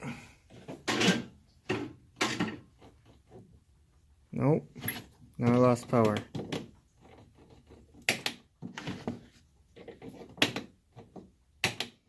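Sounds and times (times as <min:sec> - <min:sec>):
sharp clicks and knocks: 0:04.8 - 0:09.2.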